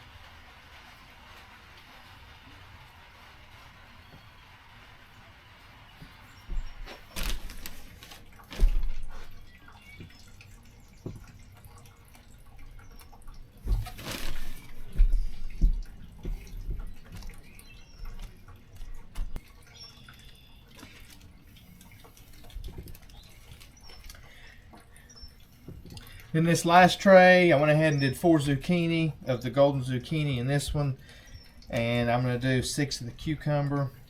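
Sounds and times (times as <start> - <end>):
hands working potting soil: 5.9 - 10.2, 13.6 - 18.8.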